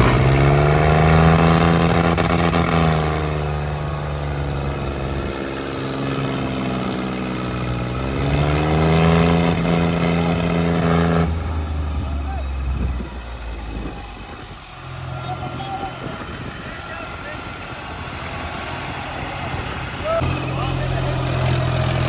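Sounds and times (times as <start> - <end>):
tractor diesel engine revving: 0.0 - 22.0.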